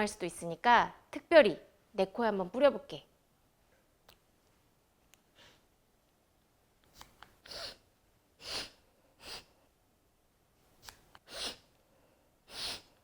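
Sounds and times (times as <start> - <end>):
sniffs through the nose: 7.0 - 7.8, 8.4 - 9.6, 10.8 - 11.7, 12.4 - 13.0.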